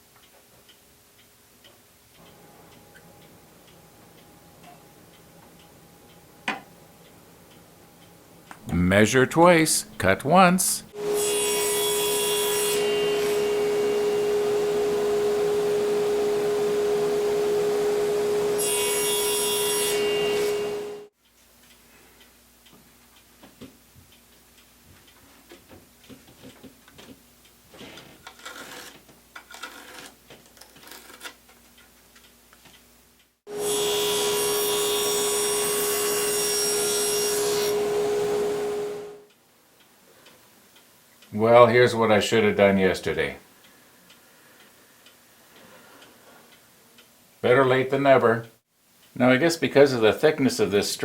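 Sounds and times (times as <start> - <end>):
power saw cutting wood: 11.0 - 21.1, 33.5 - 39.2.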